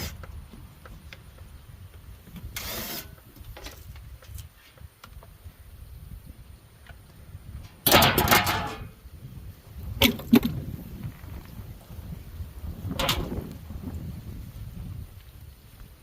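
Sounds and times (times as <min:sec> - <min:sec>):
metal clattering: 0:07.8 - 0:08.9
sharp metal knocks: 0:07.8 - 0:08.9.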